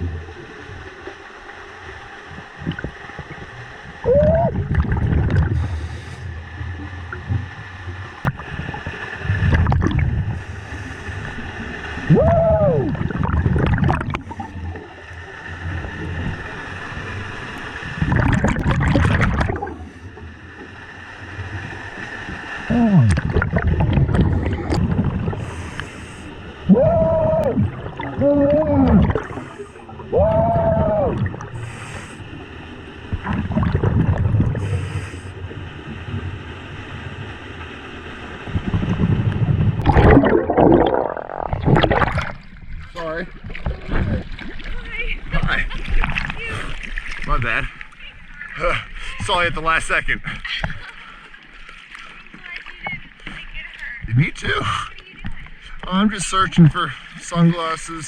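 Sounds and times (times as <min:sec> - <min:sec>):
diver exhaling bubbles underwater: 0:02.4 - 0:07.6, 0:08.2 - 0:14.9, 0:17.8 - 0:20.0, 0:22.6 - 0:25.8, 0:26.6 - 0:32.1, 0:33.1 - 0:35.2, 0:38.5 - 0:44.6.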